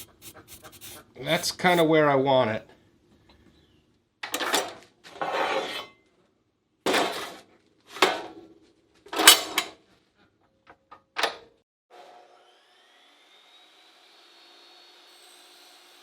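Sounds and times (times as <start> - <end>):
metal clanking and scraping: 9.1 - 9.7.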